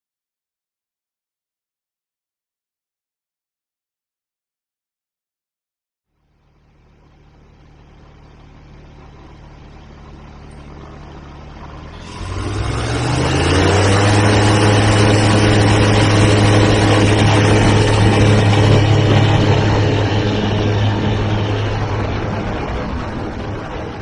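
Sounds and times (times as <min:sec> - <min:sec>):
light aircraft propeller engine droning: 0:06.2 - 0:24.0.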